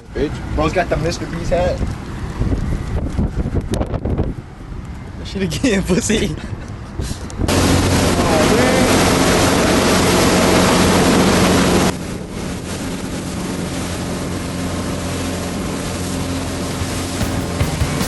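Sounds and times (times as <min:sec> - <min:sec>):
rushing wind: 0:00.2 - 0:18.0
motorboat engine humming: 0:07.5 - 0:18.0
water noise: 0:07.5 - 0:18.0.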